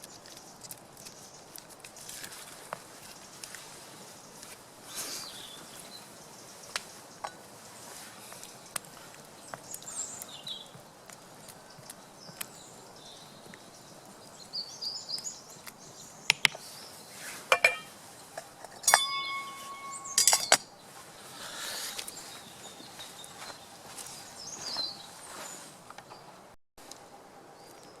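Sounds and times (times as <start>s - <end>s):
birds chirping: 0.0s - 28.0s
metal cookware clinking: 17.5s - 17.9s, 18.6s - 20.6s.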